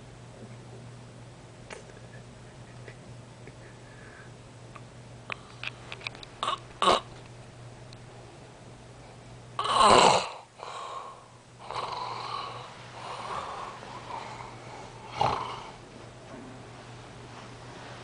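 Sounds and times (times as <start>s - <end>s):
soft drawn-out breaths: 3.6s - 4.4s, 10.6s - 15.8s
man snoring: 9.6s - 15.8s.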